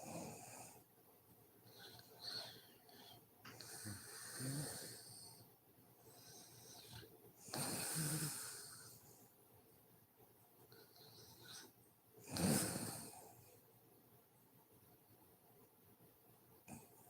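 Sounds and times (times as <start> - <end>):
woman snoring: 3.6 - 5.2, 7.5 - 9.0, 12.2 - 13.2.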